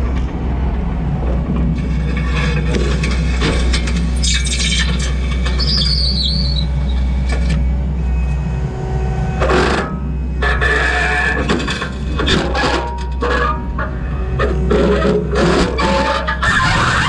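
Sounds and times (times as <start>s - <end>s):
diesel engine droning: 0.0s - 17.0s
short high squeal: 4.2s - 7.1s.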